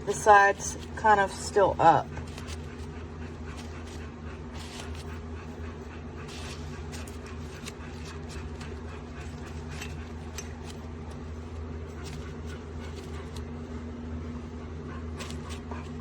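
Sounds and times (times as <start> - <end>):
low electrical hum: 0.0 - 16.0
paper filter crinkling: 2.1 - 5.6, 6.2 - 13.9, 15.2 - 16.0.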